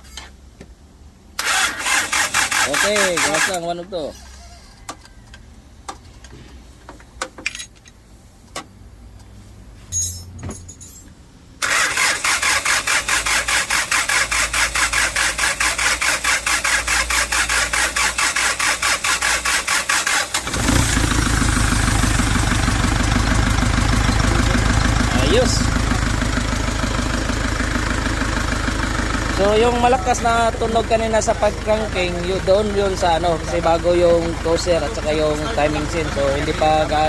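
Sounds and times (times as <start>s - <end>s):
diesel engine cranking: 1.3s - 5.0s, 11.6s - 37.0s
diesel engine idling: 20.2s - 37.0s.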